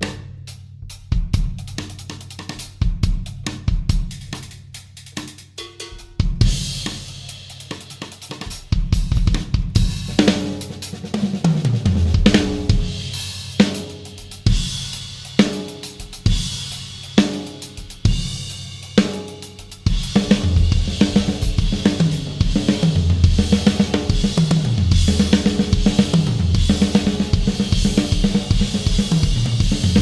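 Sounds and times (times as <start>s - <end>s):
drum kit groove: 0.0s - 30.0s.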